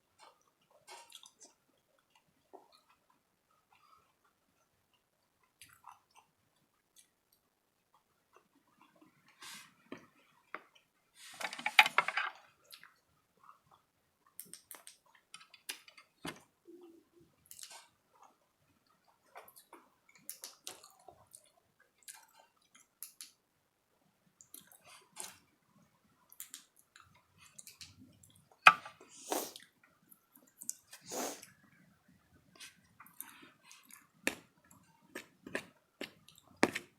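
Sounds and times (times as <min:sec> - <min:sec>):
person chewing food: 0:00.1 - 0:11.0, 0:17.4 - 0:23.4, 0:24.4 - 0:36.9.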